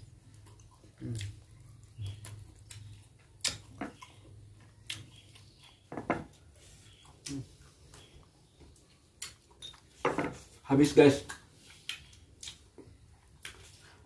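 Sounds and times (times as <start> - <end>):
wet mouth clicks and smacks: 11.3 - 12.7.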